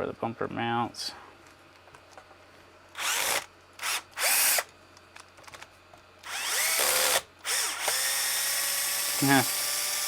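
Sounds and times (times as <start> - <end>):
power driver motor whirring: 3.0 - 4.7, 6.2 - 10.0.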